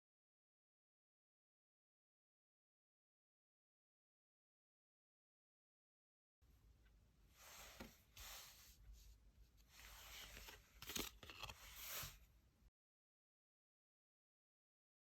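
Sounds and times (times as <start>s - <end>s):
cards being shuffled: 9.7s - 12.2s.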